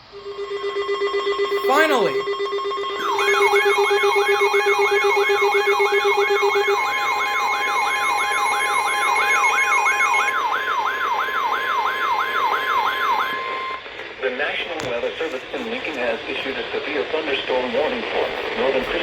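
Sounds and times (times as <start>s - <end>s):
siren-like sweeping alarm tone: 0.2s - 13.8s
steady electronic alert tones: 0.2s - 13.8s.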